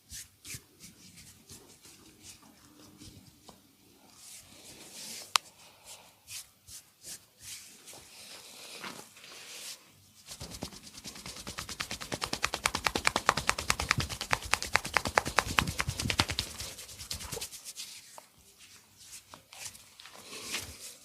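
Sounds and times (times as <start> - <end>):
hands slapping on body: 10.5 - 17.3.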